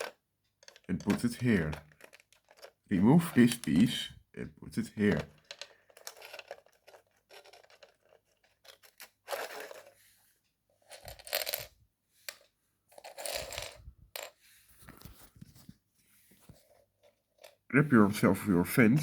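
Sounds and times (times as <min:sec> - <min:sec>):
plastic toy bricks clicking: 0:00.0 - 0:03.9, 0:05.0 - 0:09.9.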